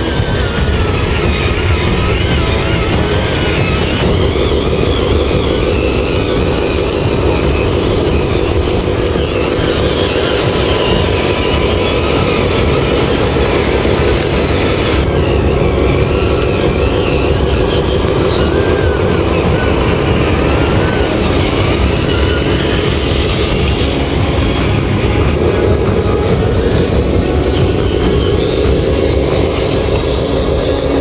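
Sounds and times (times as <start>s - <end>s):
model truck motor running: 0.0s - 31.0s.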